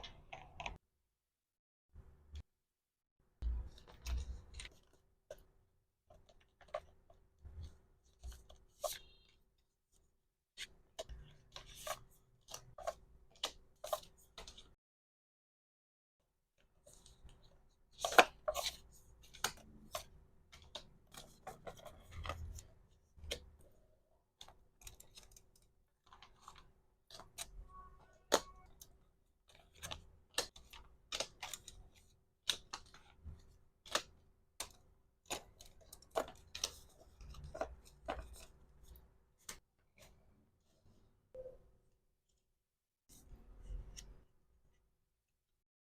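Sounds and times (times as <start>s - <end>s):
plastic items and packaging handled: 16.7s - 40.2s.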